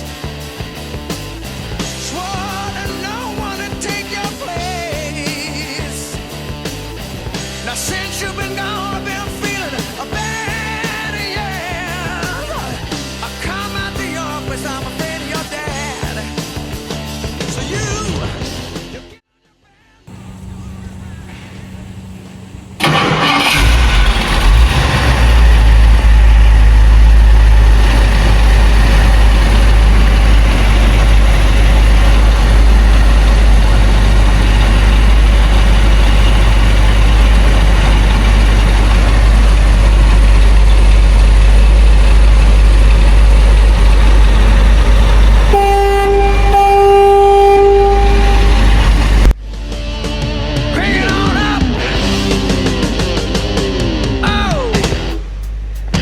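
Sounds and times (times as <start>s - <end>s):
car engine rumbling: 20.1s - 49.5s
car horn blast: 45.5s - 49.0s.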